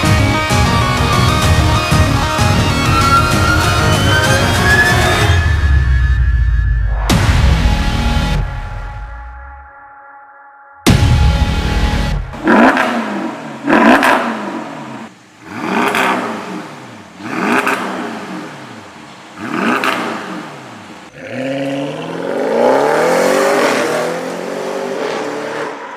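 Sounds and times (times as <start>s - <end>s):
car engine revving: 6.9s - 9.3s, 10.9s - 25.9s.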